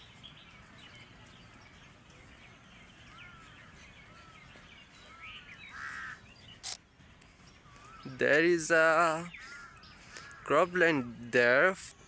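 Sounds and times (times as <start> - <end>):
birds chirping faintly: 0.0 - 12.0
bird calls rising and falling: 7.4 - 11.1.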